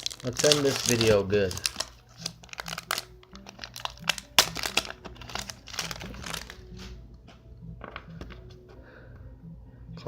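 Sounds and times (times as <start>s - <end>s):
foil wrapper crinkling: 0.0s - 6.8s.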